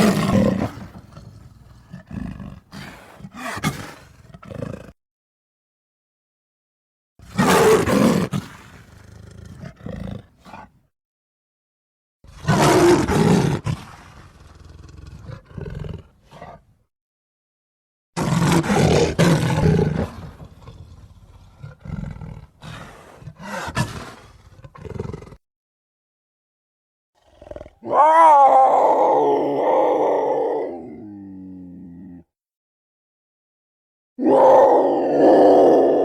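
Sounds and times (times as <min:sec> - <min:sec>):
big cat roars: 0:00.0 - 0:05.0, 0:07.3 - 0:10.7, 0:12.3 - 0:16.7, 0:18.2 - 0:25.4, 0:27.2 - 0:32.3, 0:34.2 - 0:36.0
shorter big cat calls: 0:27.2 - 0:32.3.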